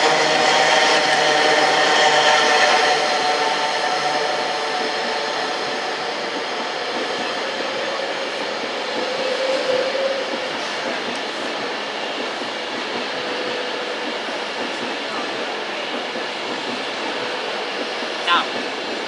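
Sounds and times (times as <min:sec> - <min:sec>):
train passing on rails: 0:00.0 - 0:19.0.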